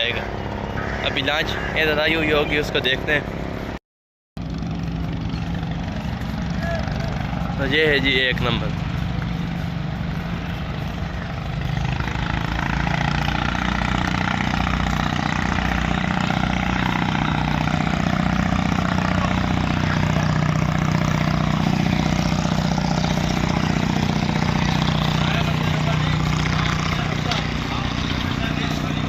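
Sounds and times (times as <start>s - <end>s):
boat engine humming: 0.0s - 3.8s, 4.4s - 29.0s.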